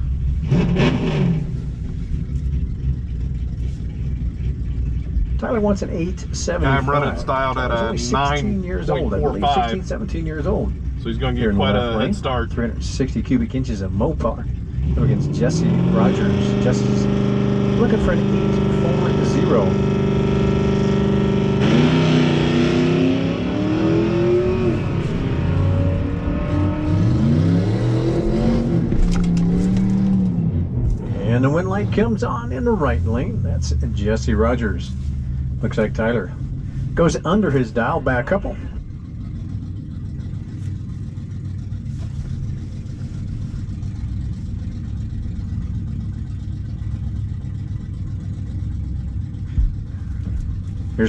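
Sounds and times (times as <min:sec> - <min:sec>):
drag racing cars accelerating: 0:00.0 - 0:02.9, 0:05.3 - 0:35.0
low vehicle rumble: 0:00.0 - 0:51.0.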